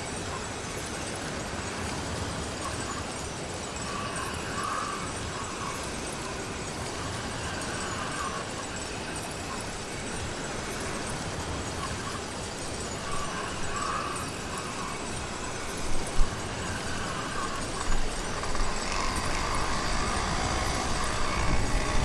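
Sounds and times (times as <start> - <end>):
small two-stroke engine running: 16.0 - 22.0.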